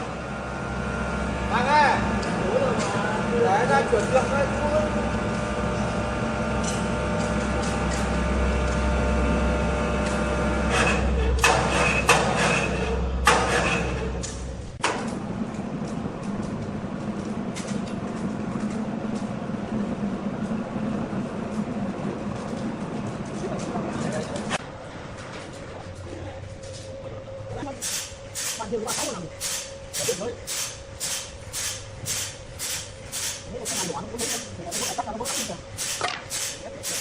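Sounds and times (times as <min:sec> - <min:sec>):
woodworking machine humming: 0:00.0 - 0:14.2.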